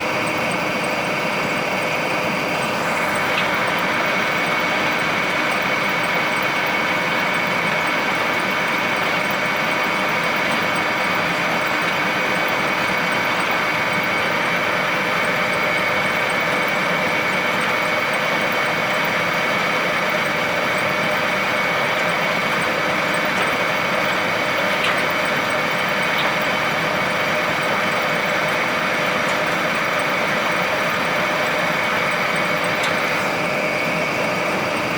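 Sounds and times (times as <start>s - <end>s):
baler machine running: 0.0s - 34.9s
high mechanical whine: 0.0s - 34.9s.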